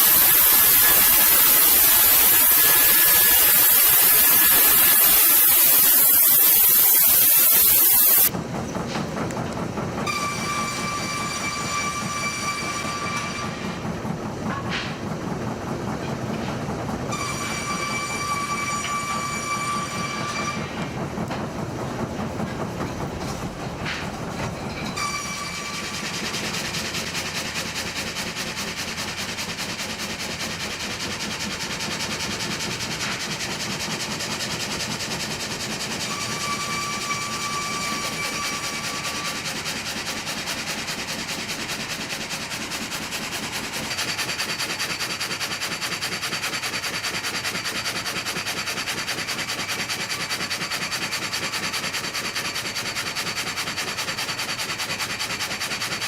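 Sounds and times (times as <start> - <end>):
heavy machinery clattering: 8.3 - 56.0.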